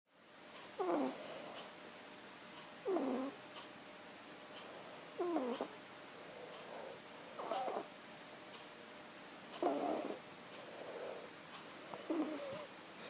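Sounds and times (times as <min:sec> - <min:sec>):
kitten snoring: 0:00.8 - 0:01.5, 0:02.8 - 0:03.4, 0:05.2 - 0:07.9, 0:09.6 - 0:12.7.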